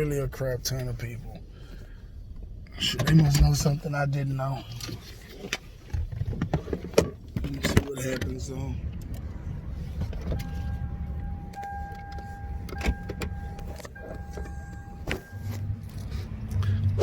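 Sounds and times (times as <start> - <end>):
car engine idling: 7.1 - 17.0.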